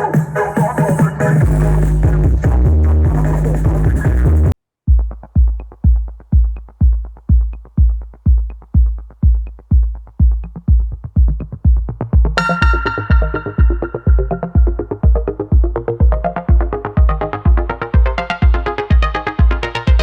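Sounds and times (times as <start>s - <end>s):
loud electronic dance music: 0.0s - 7.6s, 12.1s - 20.0s
heavy bass kick drum: 1.4s - 20.0s
synth chords: 12.3s - 20.0s.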